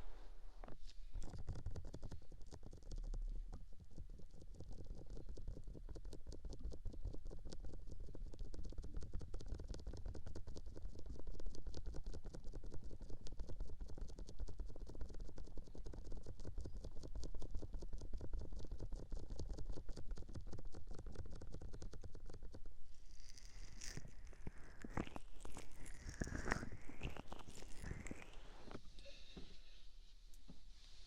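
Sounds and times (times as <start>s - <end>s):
close scratching or rubbing: 23.0s - 31.0s.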